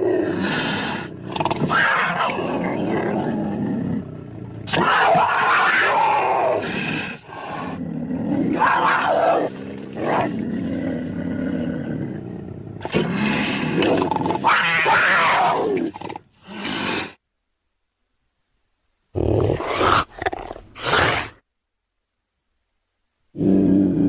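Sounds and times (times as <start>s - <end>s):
cougar growling and snarling: 0.0s - 17.1s, 19.2s - 21.4s, 23.4s - 24.0s
cougar call: 4.5s - 11.0s, 12.8s - 16.0s.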